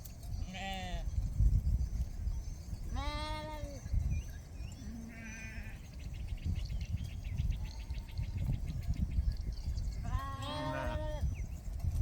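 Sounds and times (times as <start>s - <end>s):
sheep bleating: 2.9s - 3.8s, 5.0s - 5.8s, 10.0s - 11.2s.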